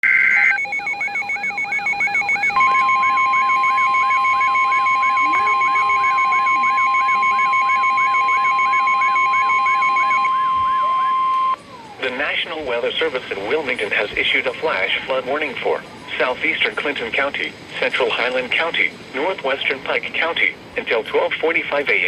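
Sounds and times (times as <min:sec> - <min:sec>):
fast chirping beeping alarm: 0:00.0 - 0:11.6
steady warning alarm tone: 0:00.0 - 0:11.6.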